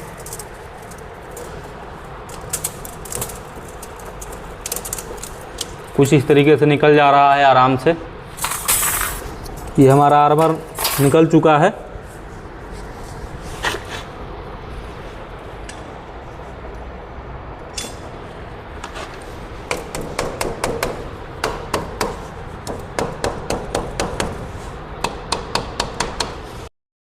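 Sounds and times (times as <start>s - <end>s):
steady background hiss: 0.0s - 26.7s
hand tools tapping and knocking: 25.0s - 26.4s.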